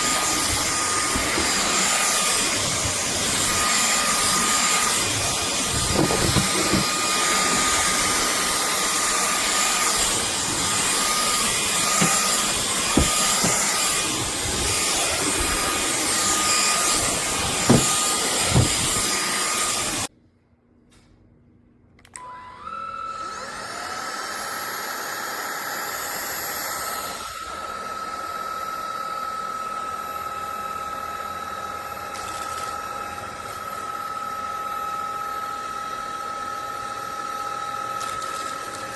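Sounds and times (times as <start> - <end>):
stick vacuum running: 0.0 - 20.1
vacuum motor whine: 0.0 - 20.1, 22.1 - 38.9.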